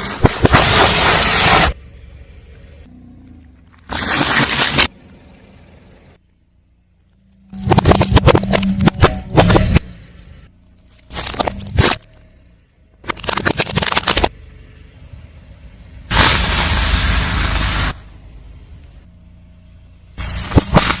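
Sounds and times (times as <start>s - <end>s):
tyre crushing brittle objects: 3.7s - 5.0s, 7.3s - 9.7s, 10.8s - 12.2s, 13.0s - 14.3s.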